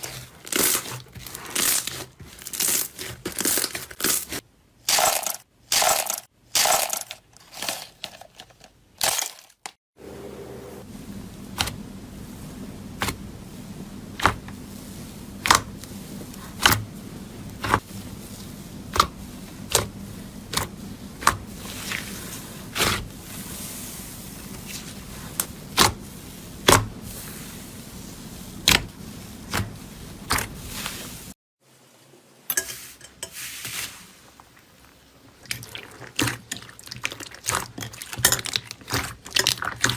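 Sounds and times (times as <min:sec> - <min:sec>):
low steady hum: 0:10.0 - 0:33.3.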